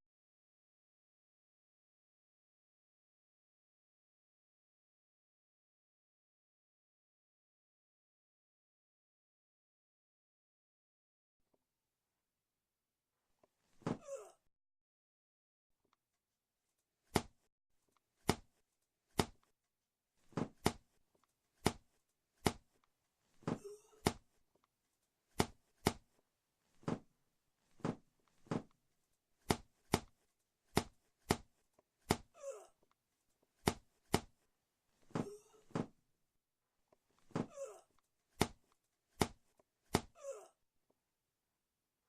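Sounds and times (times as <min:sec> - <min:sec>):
sharp thuds and smacks: 0:17.1 - 0:17.4, 0:19.2 - 0:19.4, 0:20.3 - 0:20.9, 0:21.6 - 0:22.7, 0:25.4 - 0:26.1, 0:27.8 - 0:28.7, 0:29.5 - 0:30.1, 0:30.7 - 0:31.5, 0:39.2 - 0:40.1.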